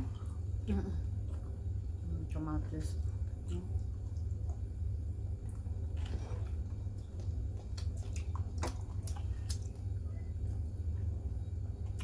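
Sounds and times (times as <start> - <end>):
low hum: 0.0 - 12.0
person chewing: 5.4 - 10.7
wet clicks and smacks: 7.0 - 10.6.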